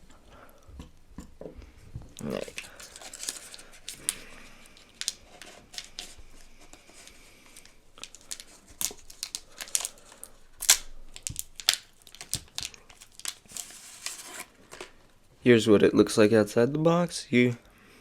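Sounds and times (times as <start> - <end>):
packaging tearing and crinkling: 2.3 - 6.2, 7.0 - 14.9.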